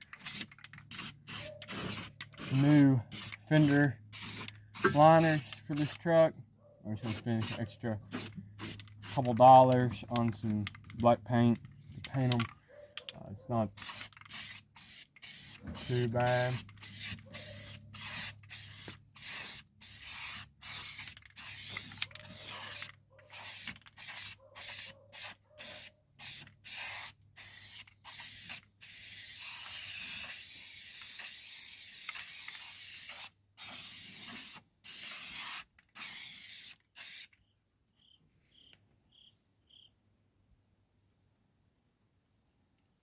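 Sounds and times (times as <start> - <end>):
aerosol can spraying: 0.2 - 6.0, 7.0 - 9.3, 13.8 - 37.4.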